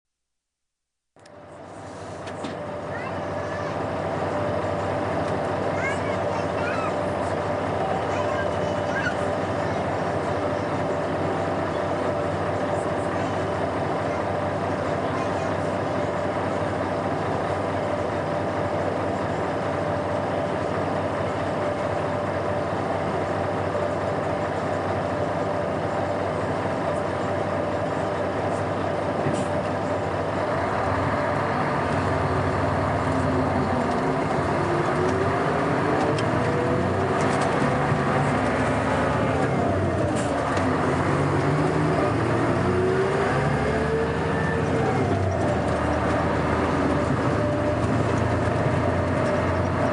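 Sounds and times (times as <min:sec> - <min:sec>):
bus engine revving: 0:01.3 - 0:49.9.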